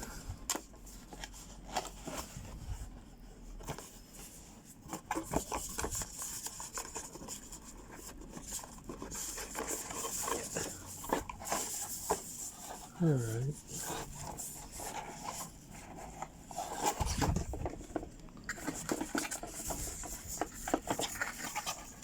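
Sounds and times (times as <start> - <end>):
cardboard box being opened: 13.6 - 22.0.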